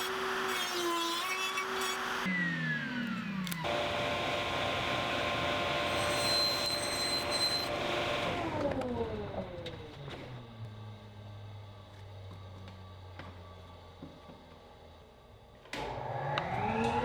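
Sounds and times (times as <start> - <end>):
power tool motor whine: 0.0 - 9.4.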